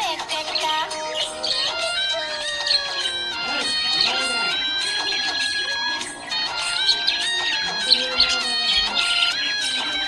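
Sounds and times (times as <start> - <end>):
children's song music: 0.0 - 10.0.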